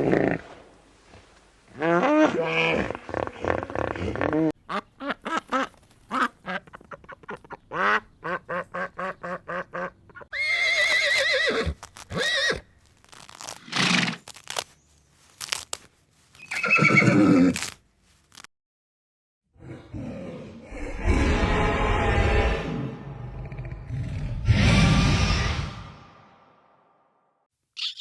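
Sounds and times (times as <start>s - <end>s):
horse whinnying: 10.3s - 12.6s, 16.4s - 17.6s.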